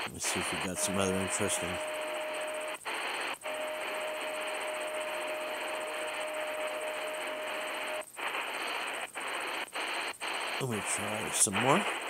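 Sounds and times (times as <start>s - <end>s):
radio static hiss: 0.0s - 12.0s
steady whistle tone: 0.3s - 2.8s, 3.4s - 8.0s.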